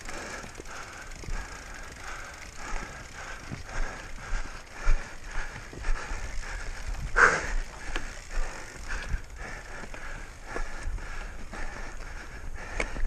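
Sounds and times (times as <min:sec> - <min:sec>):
mountain bike rattling over rough trail: 0:00.0 - 0:13.0.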